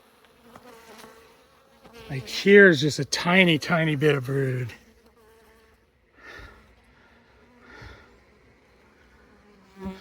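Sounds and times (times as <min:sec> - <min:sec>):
person breathing softly: 0:06.1 - 0:10.0.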